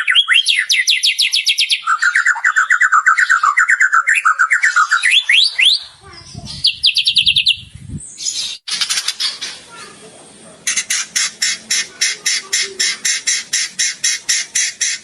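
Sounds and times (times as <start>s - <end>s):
rising whistled bird notes: 0.0s - 5.9s, 6.5s - 9.0s
harsh bird chattering: 0.0s - 15.0s.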